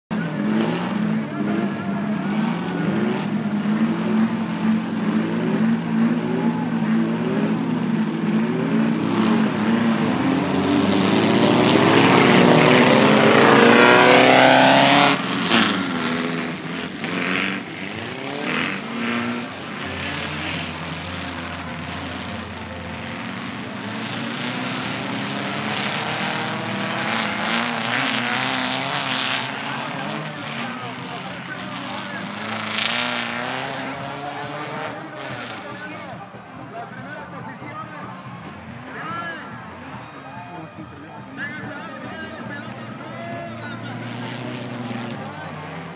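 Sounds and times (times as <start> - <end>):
race car engines revving: 0.0 - 45.9.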